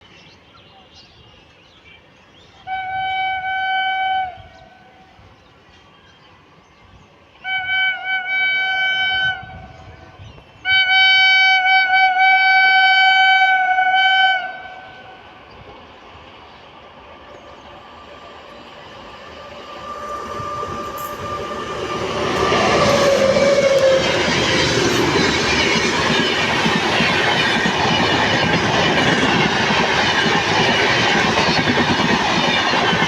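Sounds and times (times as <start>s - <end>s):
locomotive horn blasts: 2.7s - 4.6s, 7.4s - 9.9s, 10.6s - 14.9s.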